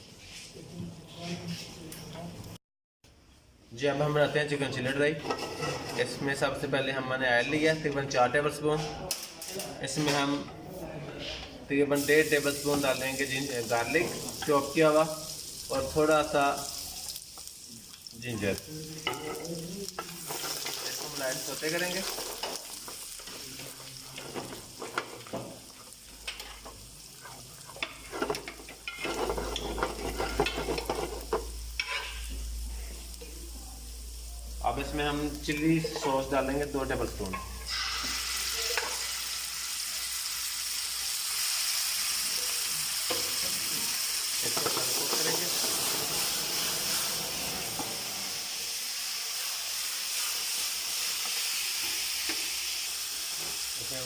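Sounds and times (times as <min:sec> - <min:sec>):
spatula scraping a pan: 0:05.2 - 0:06.2, 0:22.0 - 0:32.3
garlic sizzling in hot oil: 0:11.9 - 0:54.0.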